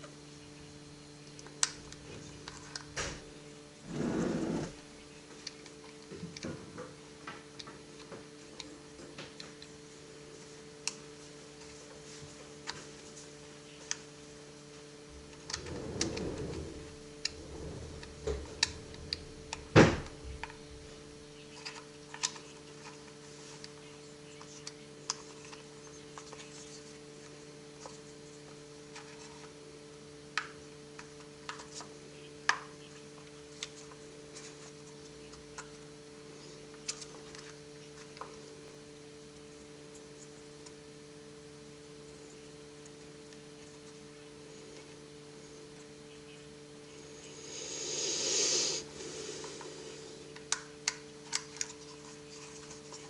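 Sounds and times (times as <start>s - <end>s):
electrical hum: 0.0s - 53.0s.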